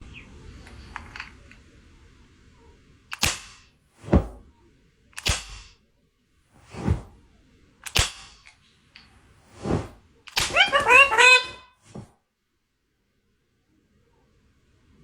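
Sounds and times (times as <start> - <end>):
toy gun bangs: 3.1 - 3.7, 5.2 - 5.8, 7.8 - 8.5, 10.3 - 11.5.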